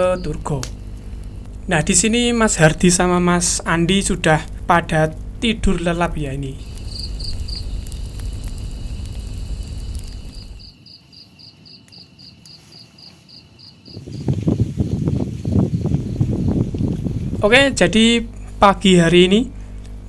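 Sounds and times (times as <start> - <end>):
low steady rumble: 0.0 - 10.7, 14.2 - 20.0
crickets chirping: 0.0 - 20.0
rustling noise: 12.5 - 17.7.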